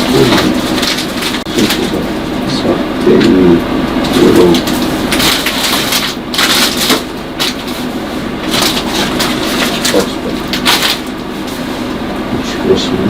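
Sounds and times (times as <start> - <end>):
plastic packaging crinkling: 0.0 - 2.4, 4.0 - 11.9.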